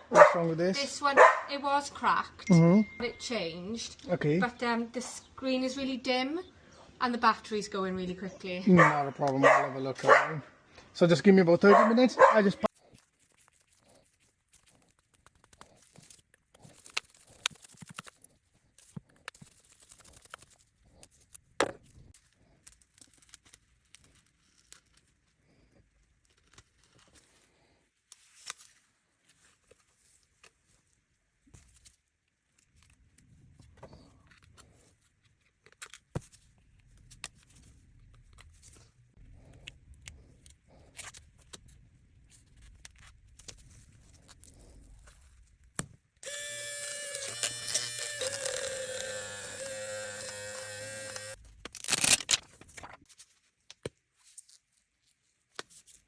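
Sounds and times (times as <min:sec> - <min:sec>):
small tools clicking and tapping: 0:46.2 - 0:51.4.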